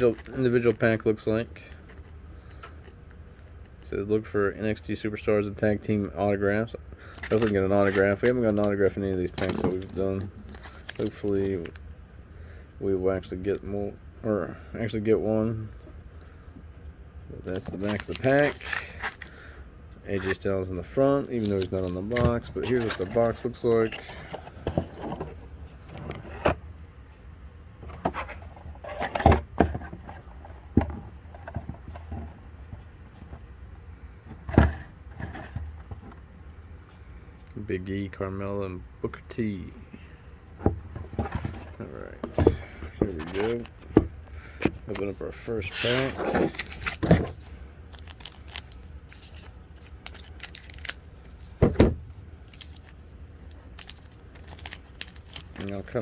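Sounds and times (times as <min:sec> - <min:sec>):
steady low hum: 0:00.0 - 0:56.0
foil wrapper tearing and crinkling: 0:07.1 - 0:11.8, 0:17.6 - 0:19.3, 0:21.3 - 0:22.8, 0:45.7 - 0:51.6, 0:52.4 - 0:56.0
cardboard box being handled: 0:07.2 - 0:11.7, 0:21.2 - 0:26.6, 0:27.8 - 0:32.5, 0:40.7 - 0:44.2, 0:45.7 - 0:56.0.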